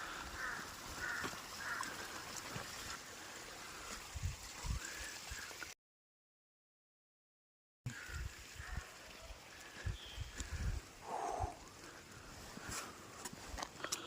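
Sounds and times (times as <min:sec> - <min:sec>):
steady outdoor hiss: 0:00.0 - 0:05.6, 0:07.9 - 0:14.0.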